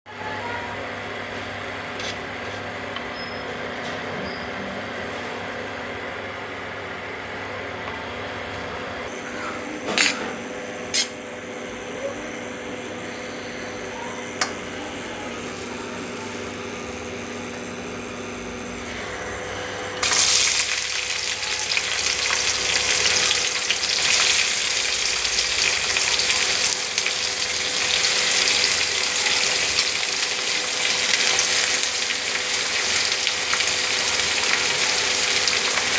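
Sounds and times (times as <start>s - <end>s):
steady hum: 9.0s - 26.1s
food sizzling in hot oil: 9.1s - 35.9s.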